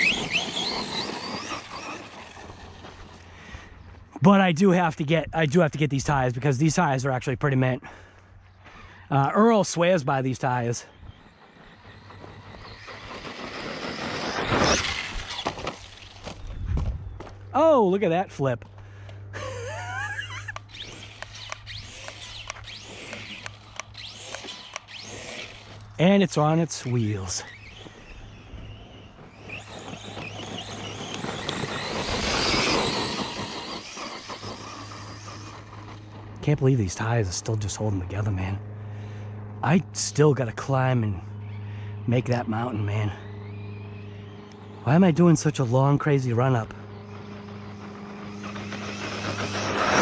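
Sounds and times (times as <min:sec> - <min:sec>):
tyres churning loose ground: 0:00.0 - 0:03.4, 0:09.7 - 0:16.4, 0:20.8 - 0:37.1
electric motor whining: 0:00.0 - 0:04.1, 0:10.3 - 0:17.4, 0:18.7 - 0:36.7, 0:37.6 - 0:50.0.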